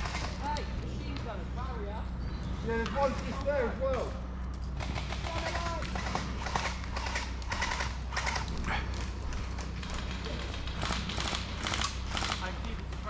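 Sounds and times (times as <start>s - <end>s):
airsoft guns firing bursts: 0.0s - 0.6s, 4.8s - 13.0s.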